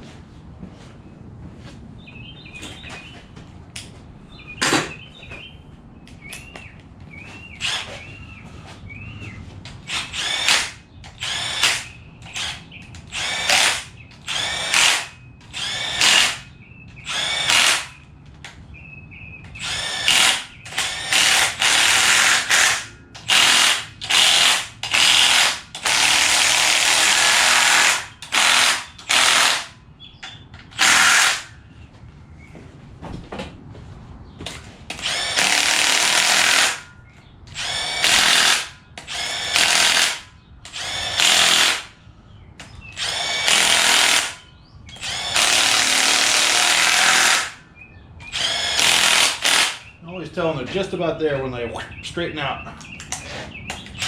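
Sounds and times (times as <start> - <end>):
power tool spinning bolts: 7.6 - 8.0, 9.8 - 18.0, 19.5 - 29.8, 30.7 - 31.5, 34.9 - 36.9, 37.5 - 41.9, 43.0 - 47.6, 48.2 - 49.9.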